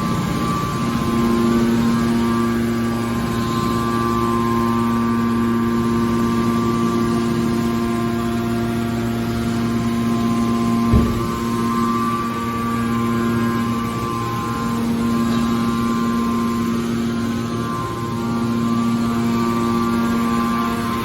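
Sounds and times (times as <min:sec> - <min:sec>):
baler pump and motor hum: 0:00.0 - 0:21.0
machine knock: 0:10.9 - 0:11.6.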